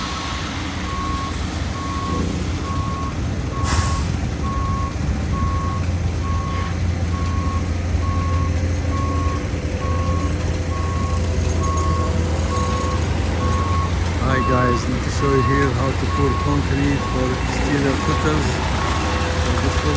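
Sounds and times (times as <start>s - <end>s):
diesel truck engine running: 0.0s - 19.9s
truck reversing alarm beeping: 0.0s - 19.9s.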